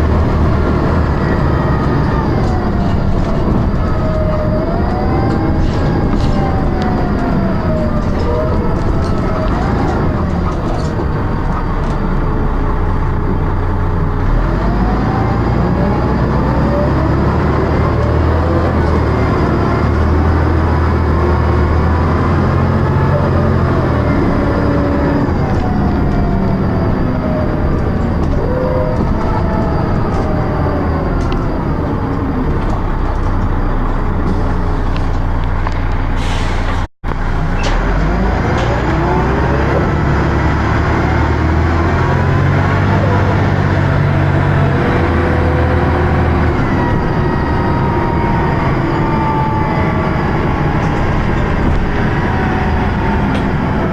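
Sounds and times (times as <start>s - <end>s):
high-pitched whines: 0.0s - 36.0s
bus engine droning: 0.0s - 53.9s.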